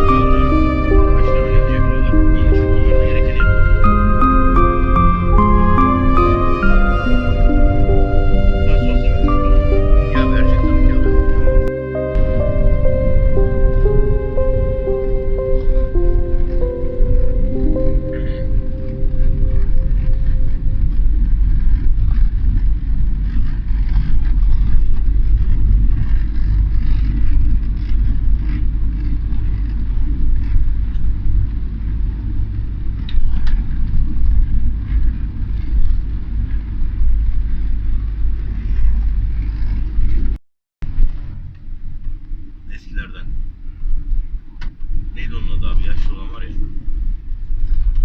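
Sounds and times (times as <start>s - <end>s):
car engine and tyres rumbling: 20.1s - 42.6s.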